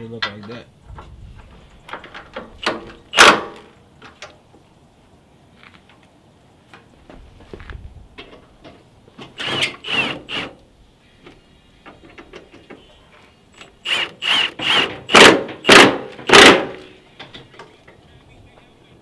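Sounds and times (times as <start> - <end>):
tool squealing on fasteners: 9.4 - 10.5, 13.6 - 16.4.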